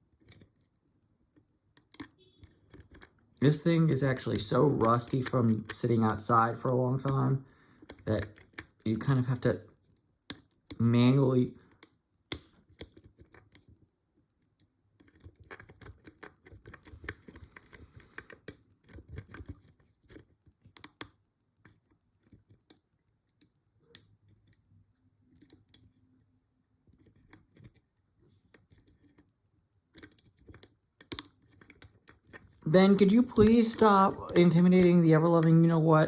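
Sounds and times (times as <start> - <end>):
lock pick clicking in padlock: 11.8 - 13.4, 30.0 - 32.4.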